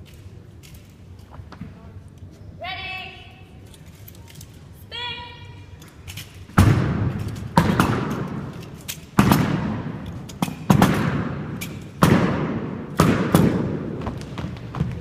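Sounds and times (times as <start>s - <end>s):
heavy thuds echoing: 6.5s - 15.0s.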